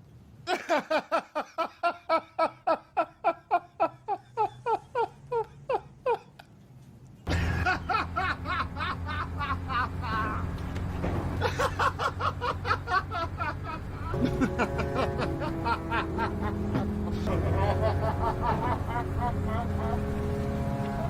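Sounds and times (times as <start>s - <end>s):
person laughing: 0.5s - 6.5s, 7.3s - 10.5s, 11.4s - 20.5s
steady low hum: 7.3s - 21.0s.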